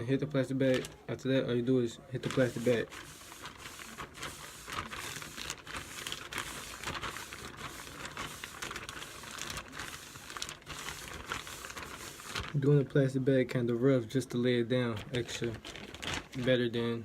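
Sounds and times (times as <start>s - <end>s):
plastic bag crinkling over hair: 0.6s - 1.0s, 2.2s - 12.7s, 14.9s - 16.9s.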